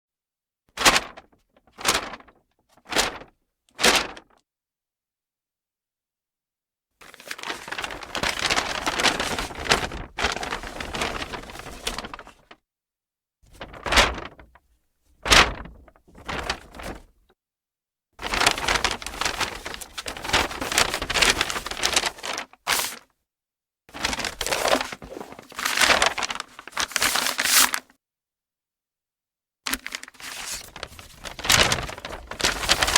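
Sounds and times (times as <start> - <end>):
paper bag crinkling: 1.8 - 2.3, 7.1 - 12.4, 18.2 - 23.0, 24.0 - 27.8, 29.7 - 32.9.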